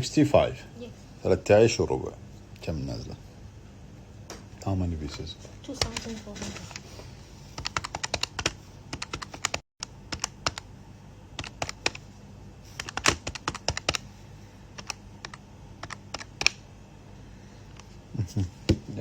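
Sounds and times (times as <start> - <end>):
calculator keys clicking: 7.6 - 10.7, 11.4 - 12.0, 12.8 - 14.0, 14.8 - 16.6.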